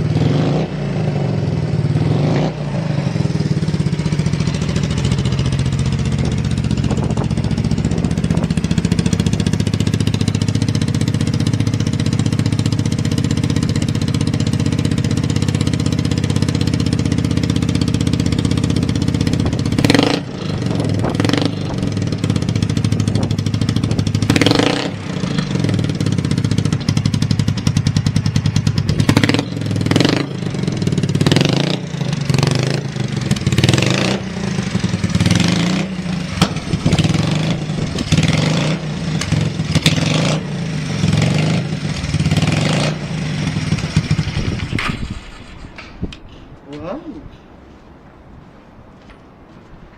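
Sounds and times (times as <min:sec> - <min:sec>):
motorcycle engine idling: 0:02.7 - 0:46.0
throttle blips revving engine: 0:17.5 - 0:22.7, 0:23.5 - 0:44.6.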